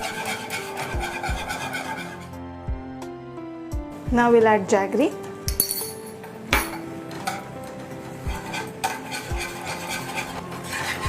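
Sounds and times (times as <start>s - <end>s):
spoon stirring thick porridge: 0.0s - 2.3s, 8.2s - 11.0s.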